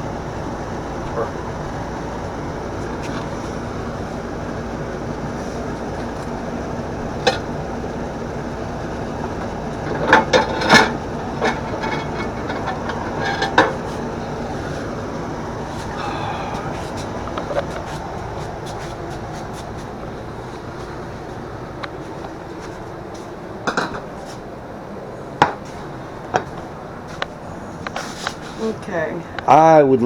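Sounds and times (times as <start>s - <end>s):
steady background hum: 0.0s - 30.0s
dishes knocking and clinking: 9.2s - 14.0s, 23.6s - 24.4s, 25.4s - 26.7s.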